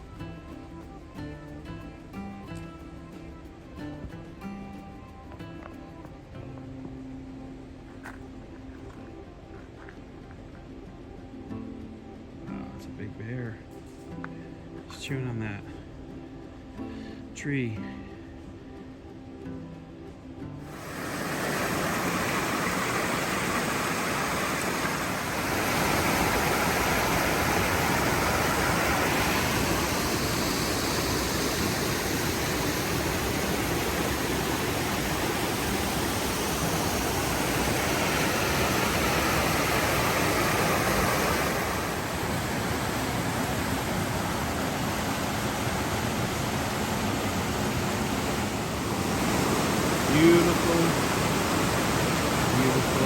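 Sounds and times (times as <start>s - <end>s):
stream water rushing: 20.6s - 53.0s.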